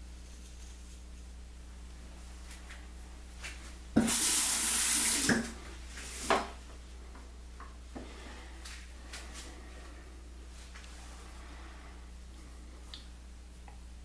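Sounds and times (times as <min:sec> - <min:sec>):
water running into basin: 0:04.0 - 0:05.7.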